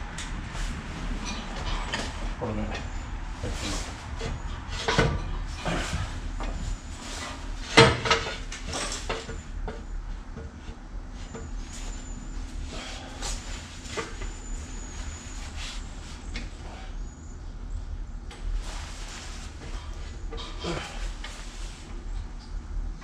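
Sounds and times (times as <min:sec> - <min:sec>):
knocks and clunks of car work: 0:07.6 - 0:10.6.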